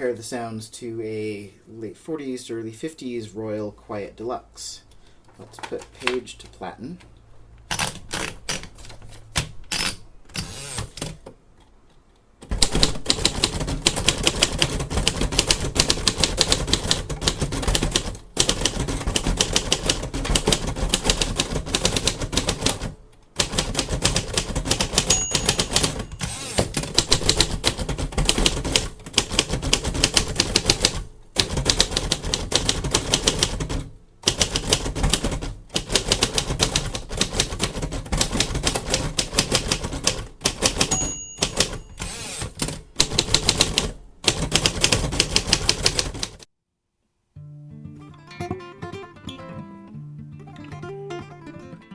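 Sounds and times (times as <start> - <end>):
manual typewriter typing: 7.7 - 11.2, 12.4 - 46.5.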